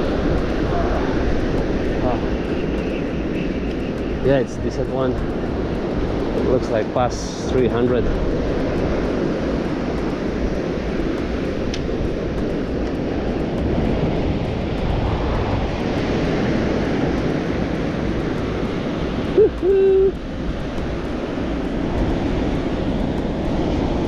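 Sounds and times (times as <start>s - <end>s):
waves breaking on beach: 0.0s - 24.0s
wind buffeting microphone: 0.0s - 24.0s
person cheering: 19.4s - 20.2s.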